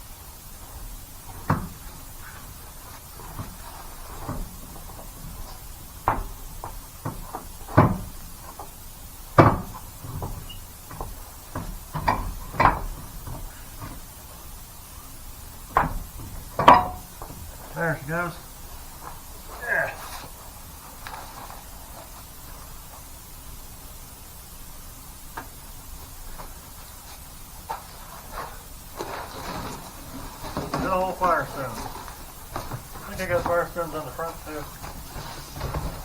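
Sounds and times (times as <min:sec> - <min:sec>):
truck wheel knocks and clunks: 0:00.6 - 0:14.4, 0:15.4 - 0:17.7, 0:27.6 - 0:36.0.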